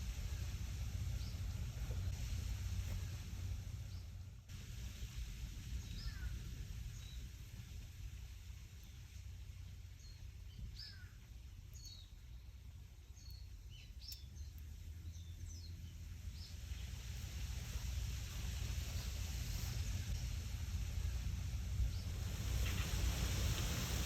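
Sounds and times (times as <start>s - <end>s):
low rumble of wind: 0.0s - 24.0s
small birds chirping: 0.1s - 2.2s, 3.7s - 4.4s, 5.6s - 8.0s, 8.6s - 20.4s
leaves rustling: 16.1s - 24.0s.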